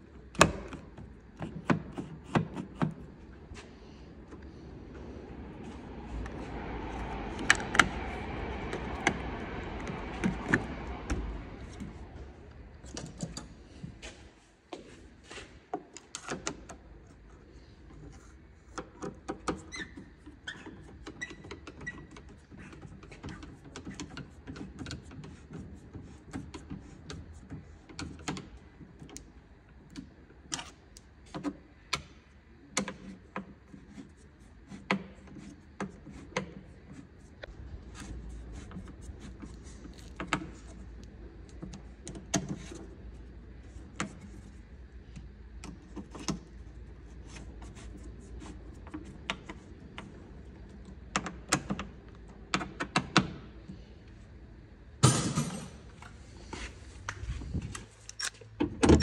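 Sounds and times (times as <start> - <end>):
steady rumbling noise: 3.1 - 14.2.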